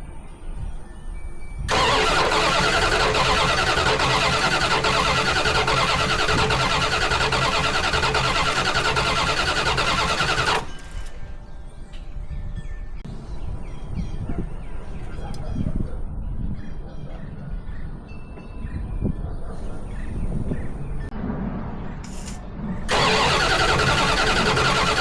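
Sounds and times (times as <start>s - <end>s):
engine starter cranking: 1.7s - 11.2s, 22.1s - 25.0s.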